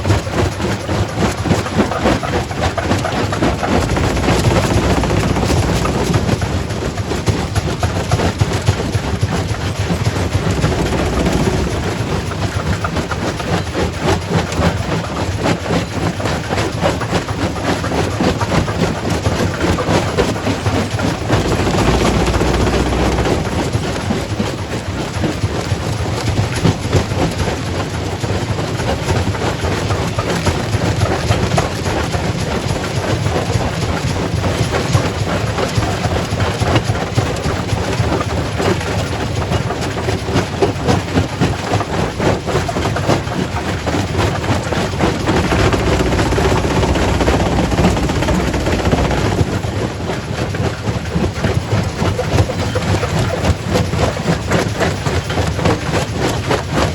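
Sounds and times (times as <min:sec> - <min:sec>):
rock crusher rumbling: 0:01.4 - 0:14.8, 0:18.9 - 0:24.5, 0:44.0 - 0:50.8.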